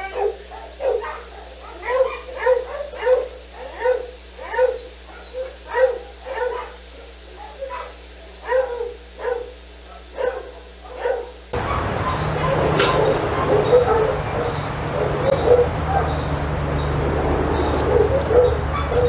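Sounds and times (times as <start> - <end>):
dog barking: 0.0 - 16.5, 17.3 - 19.0.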